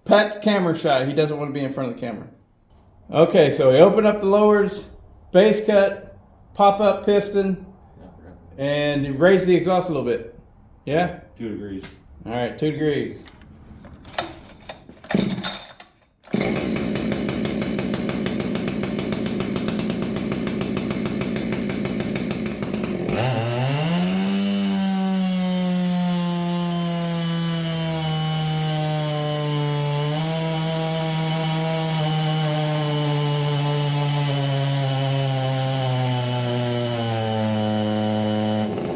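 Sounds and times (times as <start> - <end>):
chainsaw starting and revving: 15.1 - 38.9.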